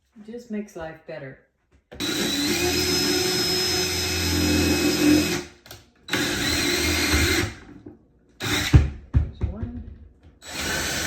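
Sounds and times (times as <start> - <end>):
cordless power drill drilling wood: 2.0 - 7.7, 8.4 - 8.9, 10.4 - 11.0.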